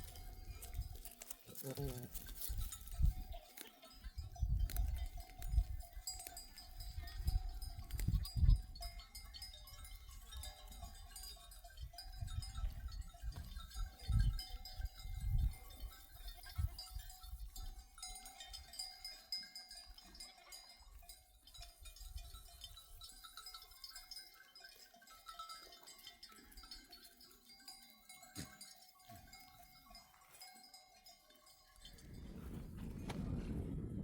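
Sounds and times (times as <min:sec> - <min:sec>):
animal bells ringing: 0:00.0 - 0:32.8.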